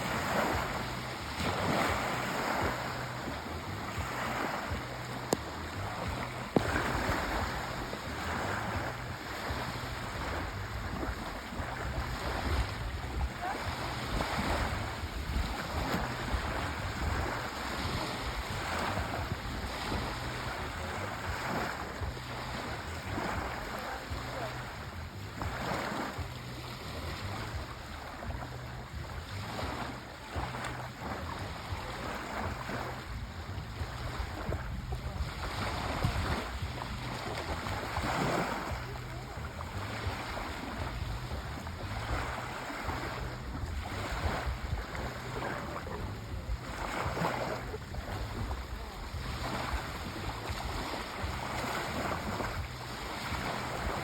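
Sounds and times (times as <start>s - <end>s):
sea waves washing ashore: 0.0s - 54.0s
wind on microphone: 0.0s - 54.0s.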